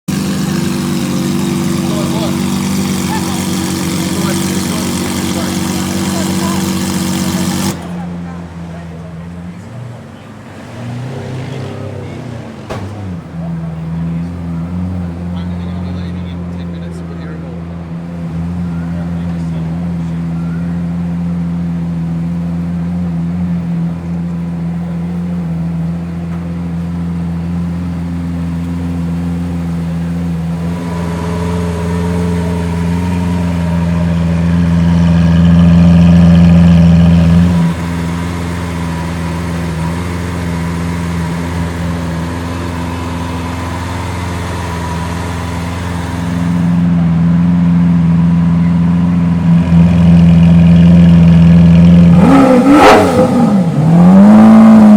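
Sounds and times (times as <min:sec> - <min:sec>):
sports car engine running: 0:00.0 - 0:54.9.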